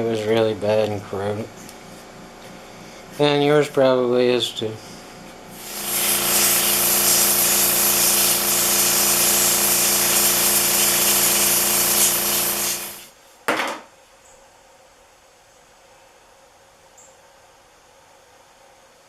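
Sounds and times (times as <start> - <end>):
compressed air blow gun hissing: 5.5 - 13.1.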